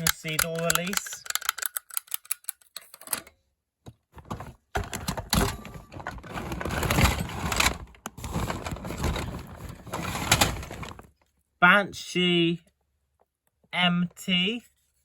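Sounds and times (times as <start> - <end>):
light plastic clicks: 0.0 - 3.0
plastic clattering and knocking: 3.8 - 11.1.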